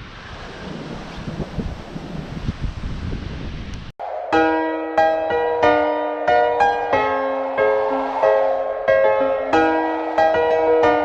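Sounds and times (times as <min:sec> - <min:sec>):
slow keyboard notes: 0:04.0 - 0:11.0.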